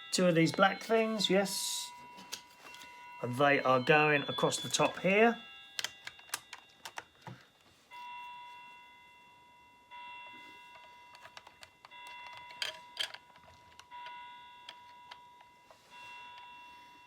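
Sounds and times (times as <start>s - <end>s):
bell-like chime: 0.0s - 7.2s, 7.8s - 17.0s
plastic bricks clicking: 5.8s - 7.4s, 11.2s - 13.9s.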